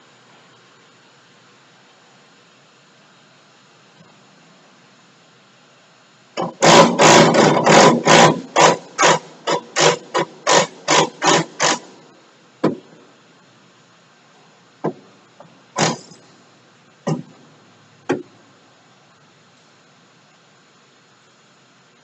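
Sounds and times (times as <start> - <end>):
sharp hand tool strokes: 6.4 - 12.8, 15.8 - 16.3
single knocks: 12.6 - 13.0, 17.0 - 17.4, 18.1 - 18.3.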